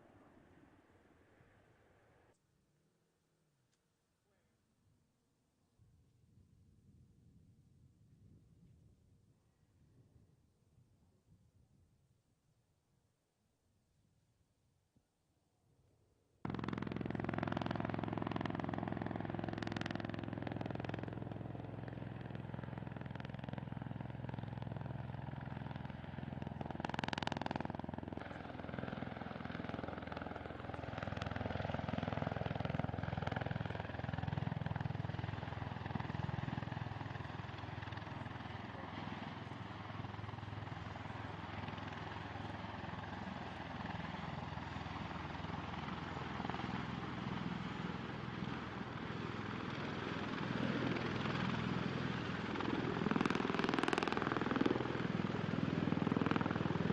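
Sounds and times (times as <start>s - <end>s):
aircraft engines droning: 16.5s - 56.9s.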